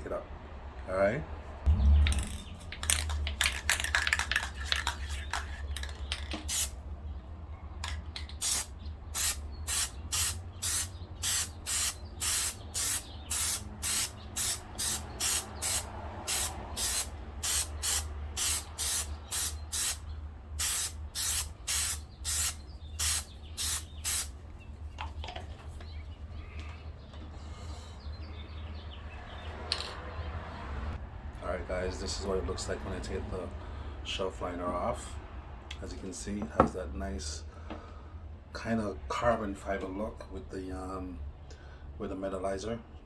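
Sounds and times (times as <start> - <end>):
aerosol can spraying: 6.5 - 6.8, 8.4 - 20.0, 20.6 - 24.3.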